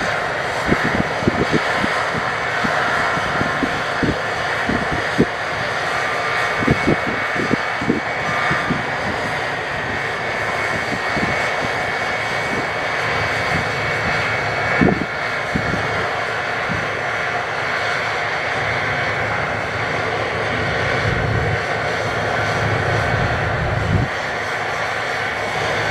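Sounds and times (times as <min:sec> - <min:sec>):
combine harvester drone: 0:00.0 - 0:25.9.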